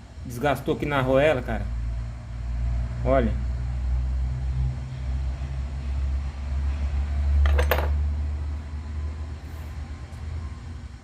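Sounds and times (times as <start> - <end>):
metallic clatter: 7.4 - 8.0.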